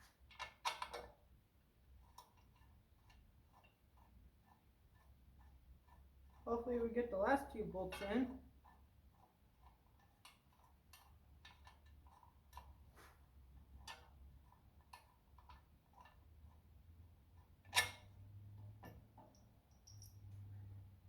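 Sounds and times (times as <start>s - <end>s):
metal clicks and taps: 18.8s - 20.4s.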